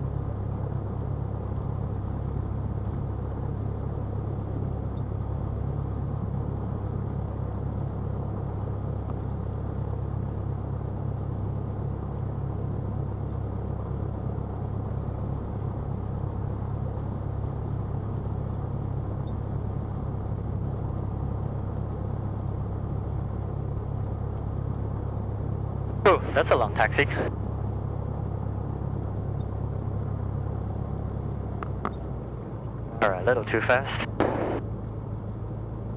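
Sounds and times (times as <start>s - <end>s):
airplane piston engine droning: 13.1s - 35.7s.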